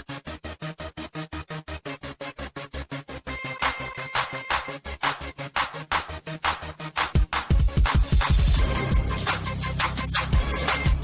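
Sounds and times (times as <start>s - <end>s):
electronic music with heavy beat: 0.0s - 11.0s.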